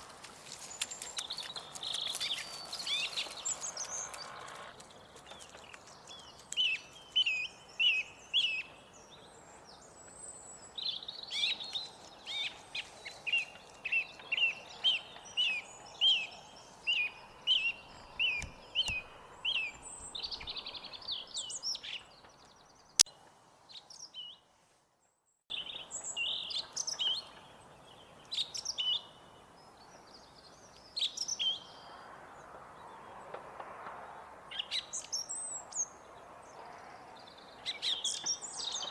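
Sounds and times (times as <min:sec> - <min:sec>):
song thrush singing: 0:00.0 - 0:23.0
sharp click: 0:18.0 - 0:20.5.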